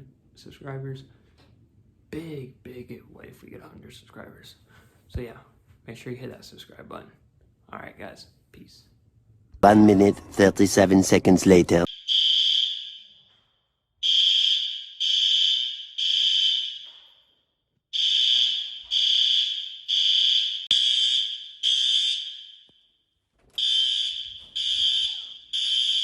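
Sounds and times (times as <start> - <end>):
fire alarm horn blasts: 11.8 - 17.2, 17.9 - 22.9, 23.6 - 26.0.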